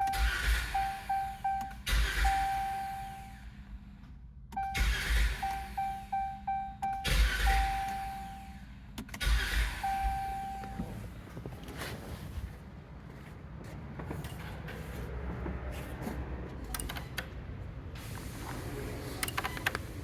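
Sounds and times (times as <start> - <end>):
dashboard chime beeping: 0.0 - 3.3, 4.6 - 8.6, 9.8 - 11.0
starter motor cranking: 9.0 - 10.3.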